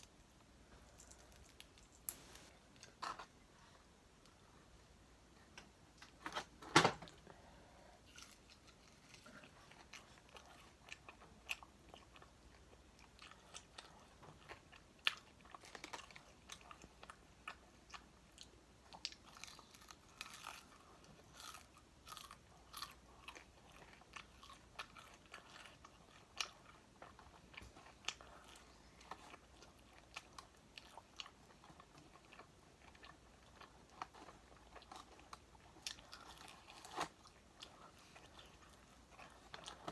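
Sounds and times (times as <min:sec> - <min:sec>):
chewing crunches and clicks: 0:08.1 - 0:39.9.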